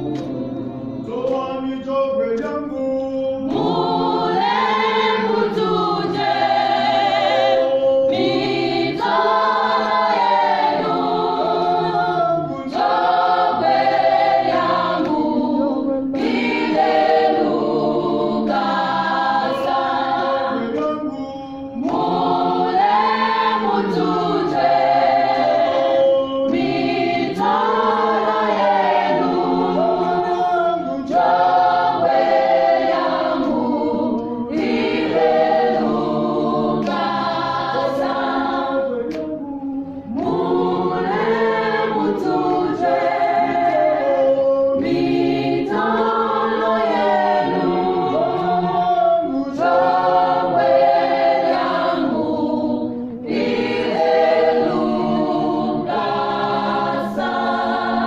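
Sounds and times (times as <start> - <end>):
choir singing a hymn unaccompanied: 0.0 - 58.0.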